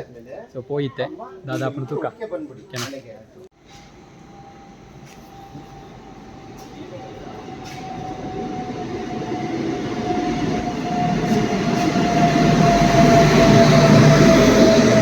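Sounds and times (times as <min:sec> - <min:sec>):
train rumble: 0:03.6 - 0:15.0
high-pitched train squeal: 0:03.7 - 0:15.0.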